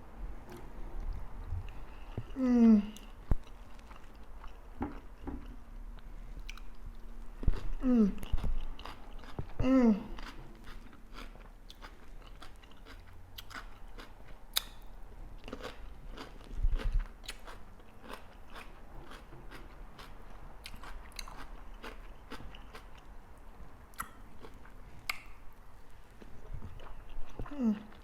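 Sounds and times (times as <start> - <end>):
chewing and crunching fish: 7.4 - 14.8, 15.4 - 23.1.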